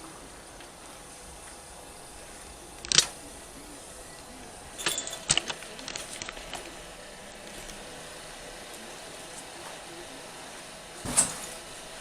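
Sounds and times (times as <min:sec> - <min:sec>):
steady background noise: 0:00.0 - 0:12.0
metal tools clinking: 0:04.8 - 0:06.7.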